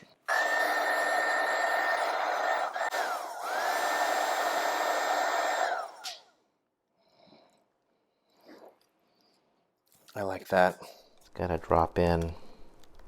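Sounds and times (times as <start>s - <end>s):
heat gun motor whine: 0.3s - 6.3s.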